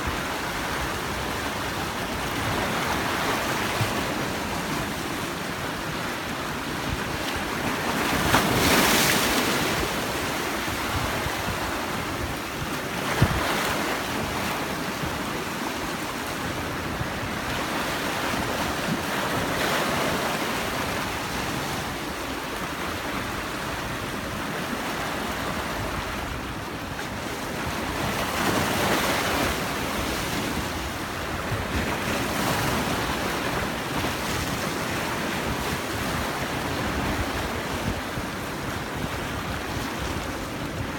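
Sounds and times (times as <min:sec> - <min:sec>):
wind buffeting microphone: 0:00.0 - 0:19.5
surf washing onto shore: 0:00.0 - 0:40.9.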